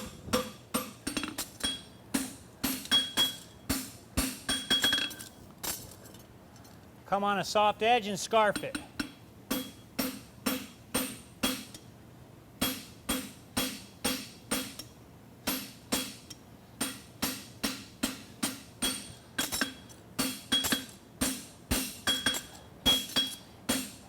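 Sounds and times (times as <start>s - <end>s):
hammer ringing on anvil: 0.4s - 3.8s, 4.5s - 5.2s, 16.8s - 24.0s.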